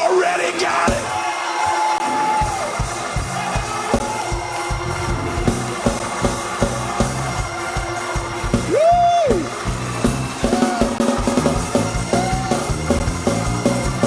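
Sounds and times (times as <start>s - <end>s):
fast drum kit beat: 0.8s - 14.0s
organ chords: 9.4s - 14.0s.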